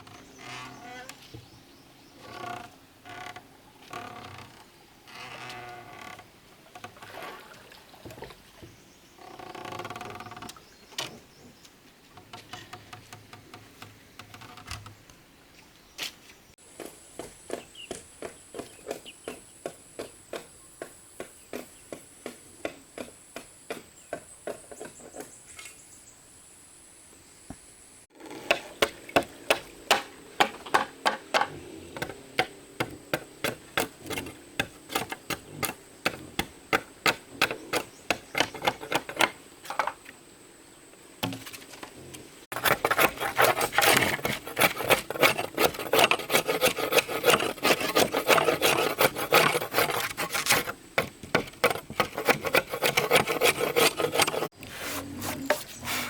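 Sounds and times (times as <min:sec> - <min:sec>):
hand tool scraping: 0:28.2 - 0:40.0, 0:42.5 - 0:56.0.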